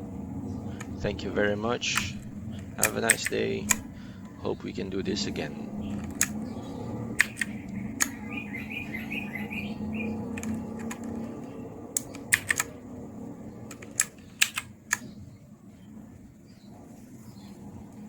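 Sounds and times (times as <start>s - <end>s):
mechanical keyboard clicks: 0.6s - 1.1s, 1.9s - 4.0s, 5.6s - 9.0s, 10.0s - 15.2s.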